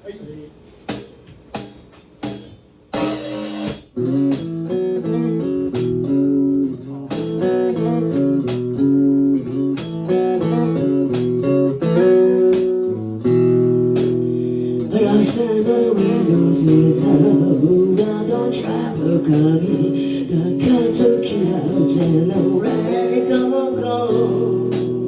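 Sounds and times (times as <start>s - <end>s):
drums: 0.0s - 25.0s
cymbal hits: 0.9s - 3.9s
guitar chords: 0.9s - 25.0s.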